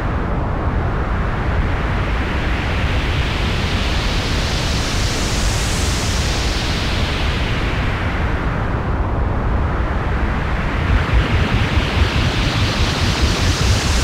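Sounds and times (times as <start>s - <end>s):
synthesized jet flyby: 5.3s - 14.0s.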